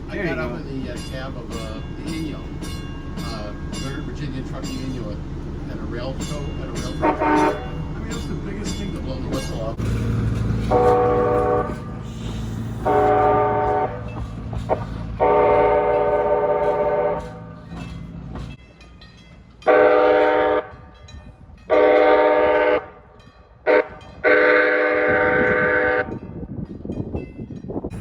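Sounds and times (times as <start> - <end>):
low rumble of moving railcar: 0.0 - 28.0
train horn chord blasts: 7.0 - 7.8, 10.6 - 12.0, 12.8 - 14.1, 15.2 - 17.4, 19.7 - 21.0, 21.7 - 23.0, 23.6 - 26.2.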